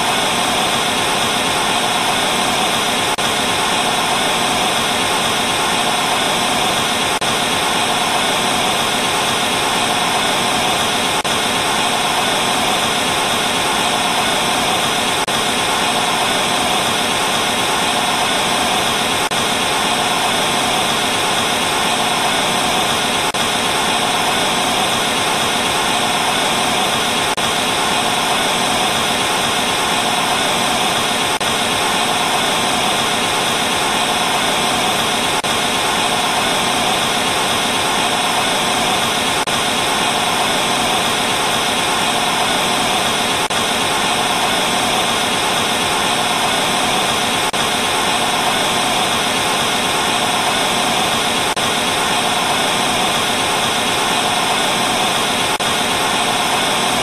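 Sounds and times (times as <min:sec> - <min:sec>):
television static hiss: 0:00.0 - 0:57.0.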